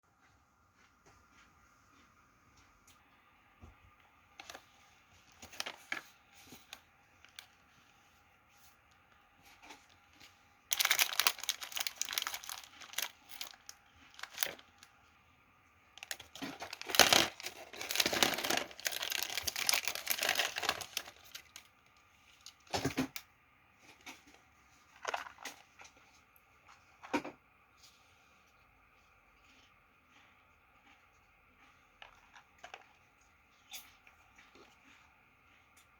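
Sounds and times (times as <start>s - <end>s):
plastic packaging crinkling and tearing: 4.4s - 7.6s, 9.4s - 14.9s, 16.0s - 23.2s, 24.9s - 25.6s.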